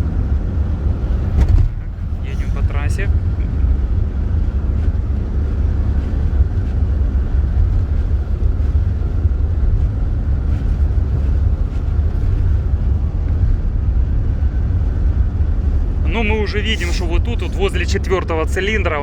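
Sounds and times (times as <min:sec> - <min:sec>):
van engine rumble from inside: 0:00.0 - 0:19.0.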